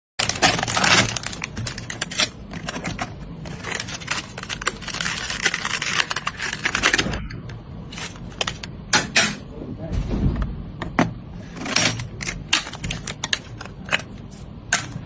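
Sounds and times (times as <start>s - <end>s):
hands handling computer parts: 0.2s - 8.7s.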